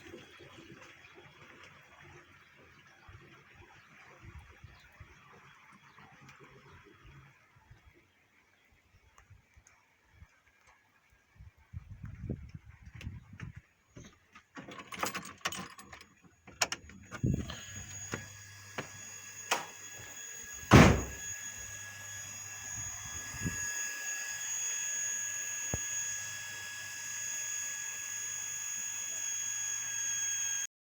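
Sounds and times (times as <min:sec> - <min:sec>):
small motor whining: 0:17.1 - 0:30.7
knocks and clunks: 0:20.7 - 0:21.2
loud thump: 0:20.7 - 0:21.2.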